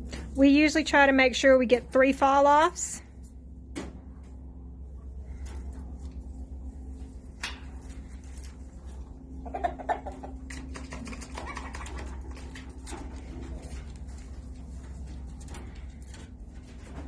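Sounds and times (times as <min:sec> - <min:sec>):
steady low hum: 0:00.0 - 0:17.0
rabbits moving in cage: 0:03.7 - 0:17.0.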